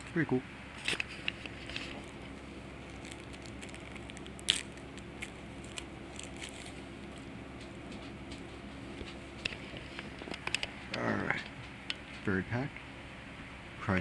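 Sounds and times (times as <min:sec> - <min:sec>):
steady low hum: 0:00.0 - 0:14.0
foil wrapper crinkling and tearing: 0:00.8 - 0:07.3
cards being shuffled: 0:00.8 - 0:10.6.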